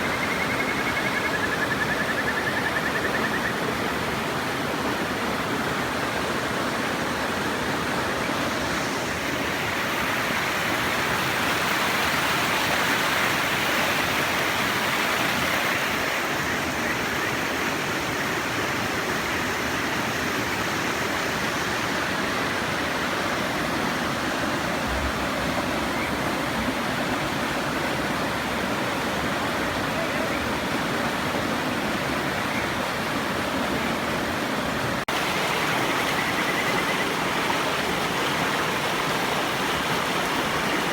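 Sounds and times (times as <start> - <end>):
frogs whistling calls: 0.0 - 3.8, 35.3 - 37.8
river water rushing over rocks: 3.6 - 40.9.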